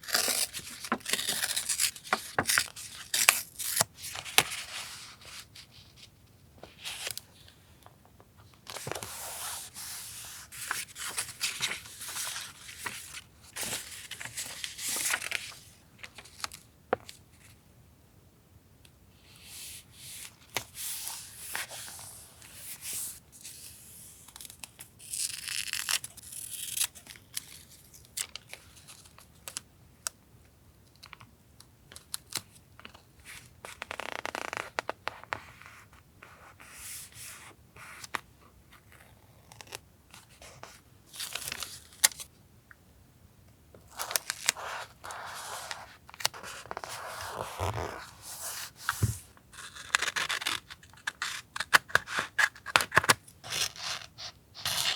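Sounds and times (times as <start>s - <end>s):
paper tearing and rustling: 0.0s - 4.8s.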